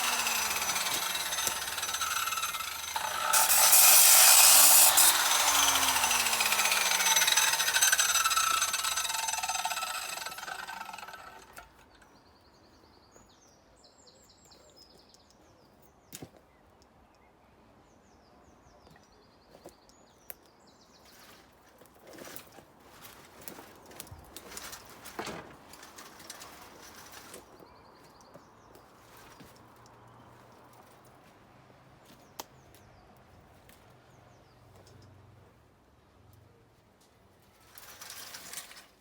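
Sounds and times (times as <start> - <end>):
power tool winding down: 0.0 - 11.8.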